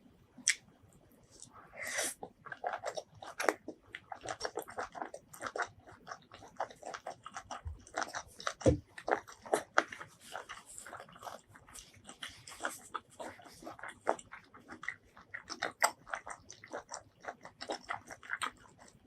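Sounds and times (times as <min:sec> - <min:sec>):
wet smacks and clicks: 0:00.4 - 0:00.7
person chewing food: 0:00.4 - 0:19.0.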